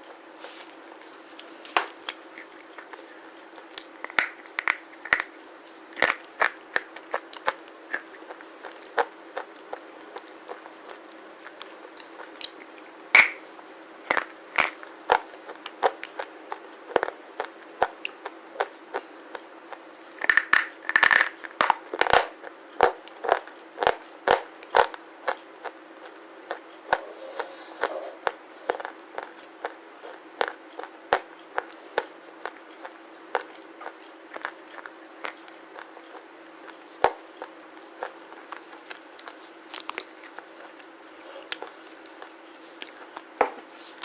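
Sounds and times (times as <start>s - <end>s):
slate pencils crunched by teeth: 1.8s - 5.4s, 6.0s - 10.3s, 20.1s - 22.3s.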